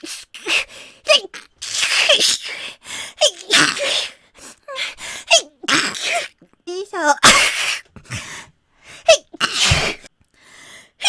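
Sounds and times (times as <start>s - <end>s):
woman sneezing: 7.2s - 7.9s, 9.1s - 10.1s.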